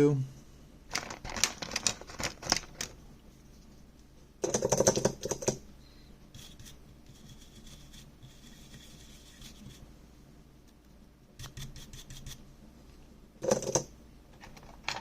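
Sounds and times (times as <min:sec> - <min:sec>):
rapid small clicks and scratching: 0:00.9 - 0:03.0, 0:04.4 - 0:05.6, 0:13.4 - 0:15.0.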